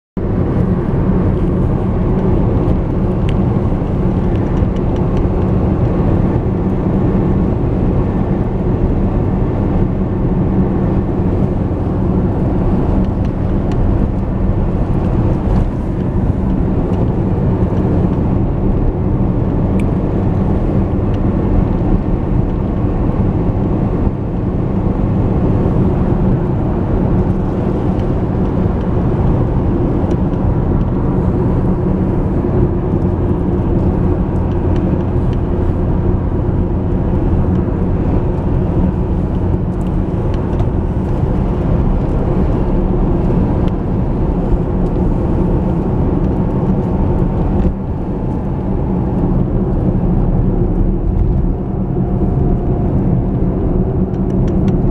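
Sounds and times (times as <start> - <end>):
car engine and road noise: 0.2 - 54.9.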